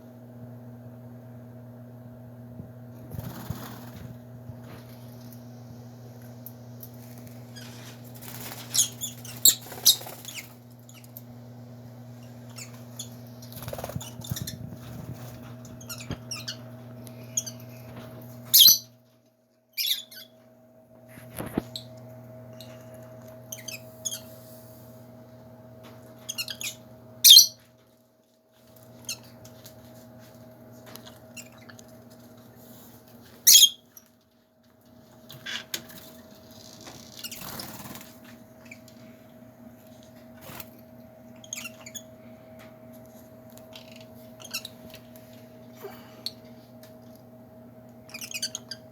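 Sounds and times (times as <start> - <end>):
steady low hum: 0.0 - 35.2, 37.2 - 48.9
lovebirds chirping and squeaking: 7.6 - 11.1, 12.2 - 16.7, 17.3 - 17.8, 18.5 - 18.9, 19.8 - 20.4, 23.5 - 24.3, 26.2 - 27.6, 33.4 - 34.0, 41.4 - 42.1, 43.7 - 45.0, 48.1 - 48.9.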